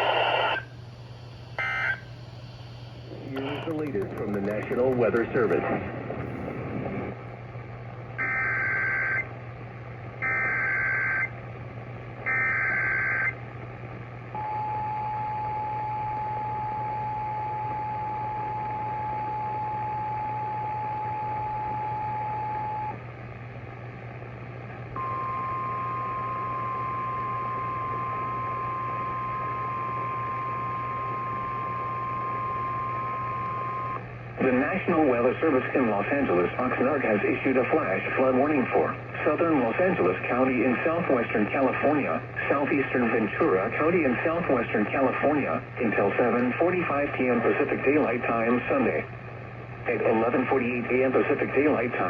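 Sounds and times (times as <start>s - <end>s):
steady attention tone: 0.0s - 5.6s.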